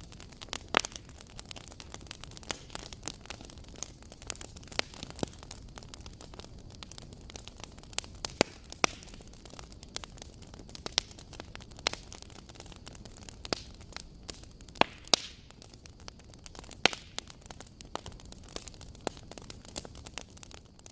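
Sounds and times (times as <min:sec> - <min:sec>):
crackling and popping wood: 0:00.0 - 0:20.9
flames rumbling: 0:00.0 - 0:20.9.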